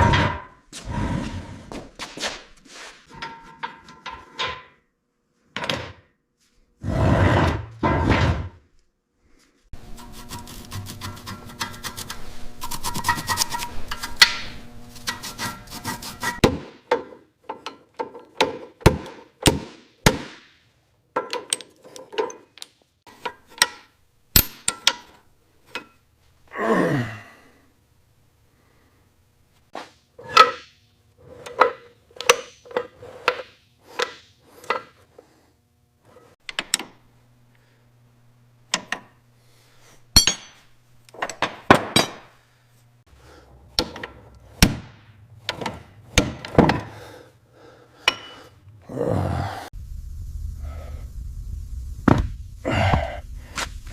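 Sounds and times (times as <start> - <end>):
tools knocking and clanking on metal: 3.1 - 4.8, 16.3 - 20.2, 21.1 - 26.0, 41.2 - 42.3, 43.7 - 44.8, 45.4 - 47.0.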